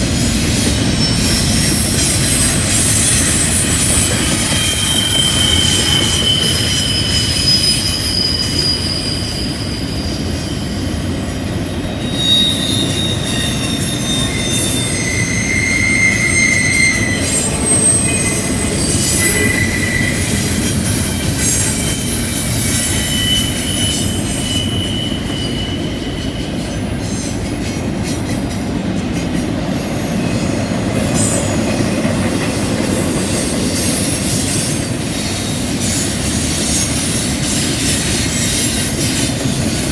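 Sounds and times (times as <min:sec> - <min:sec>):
train wheels rumbling on rail: 0:00.0 - 0:39.9
wheel flanges squealing: 0:00.1 - 0:27.4, 0:30.1 - 0:39.9.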